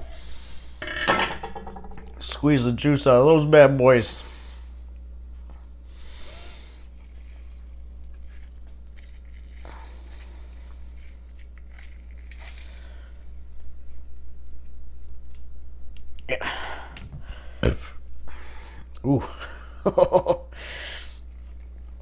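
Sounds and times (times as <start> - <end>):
steady low hum: 0.0 - 22.0
limes squeezed by hand: 6.0 - 13.6.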